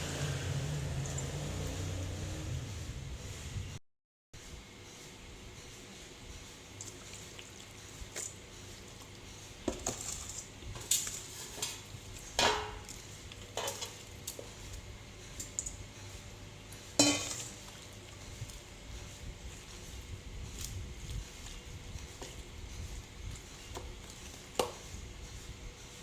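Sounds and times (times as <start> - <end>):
dishes and utensils clinking: 17.0 - 17.6.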